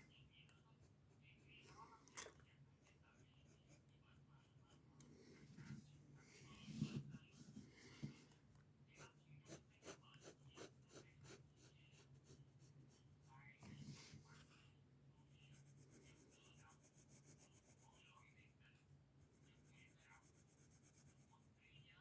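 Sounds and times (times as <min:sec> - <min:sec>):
faint low hum: 0:00.0 - 0:22.0
pencil scratching on paper: 0:02.8 - 0:04.9, 0:09.0 - 0:14.5, 0:15.3 - 0:22.0.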